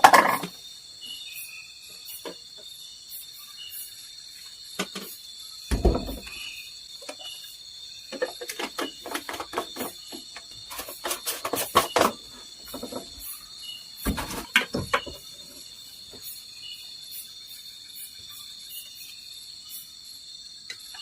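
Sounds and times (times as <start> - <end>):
insects trilling: 0.0 - 21.0.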